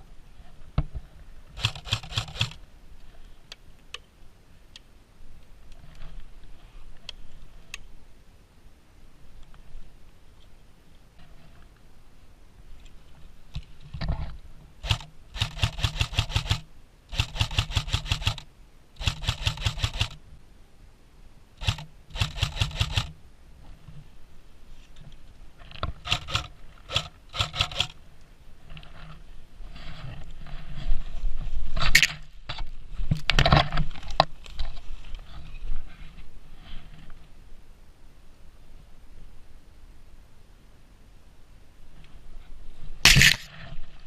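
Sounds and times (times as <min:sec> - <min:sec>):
airsoft gun firing bursts: 0:01.6 - 0:02.6, 0:14.8 - 0:20.2, 0:21.6 - 0:23.2, 0:26.0 - 0:28.0.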